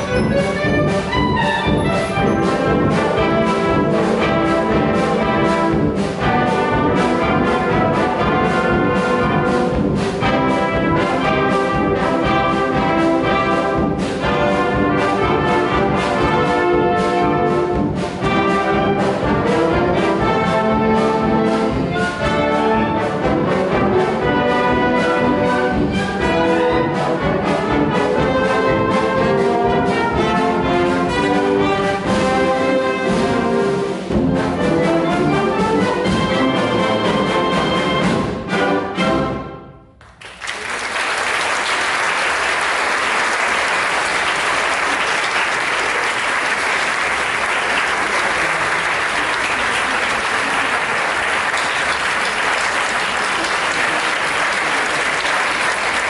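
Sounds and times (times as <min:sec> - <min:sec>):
wind band playing: 0:00.0 - 0:39.8, 0:40.6 - 0:56.0
audience applauding: 0:40.0 - 0:56.0.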